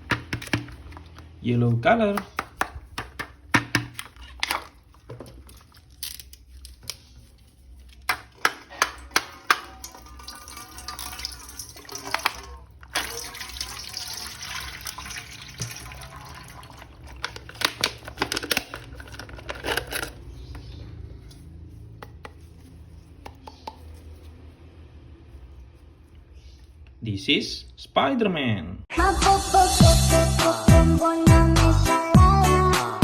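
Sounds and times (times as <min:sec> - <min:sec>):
plastic clicks and knocks: 0:00.0 - 0:01.1, 0:02.2 - 0:05.3
tap water running and splashing: 0:09.2 - 0:17.3.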